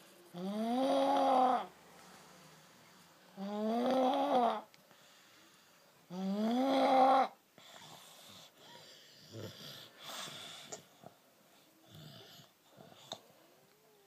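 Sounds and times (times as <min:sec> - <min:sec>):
baby snoring: 0:00.3 - 0:01.7, 0:03.4 - 0:04.7, 0:06.1 - 0:10.8
wheezy breaths: 0:07.6 - 0:13.5.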